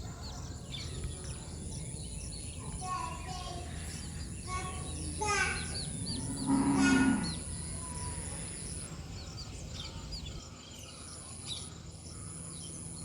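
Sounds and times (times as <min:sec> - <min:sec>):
chicks peeping: 0:00.0 - 0:10.4.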